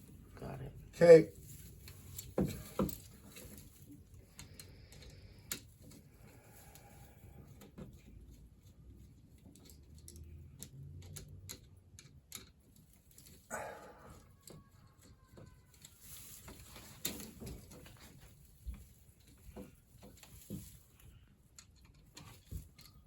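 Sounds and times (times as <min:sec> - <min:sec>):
clicks and taps of wiring: 0:01.8 - 0:06.1, 0:09.0 - 0:13.5, 0:14.3 - 0:23.0.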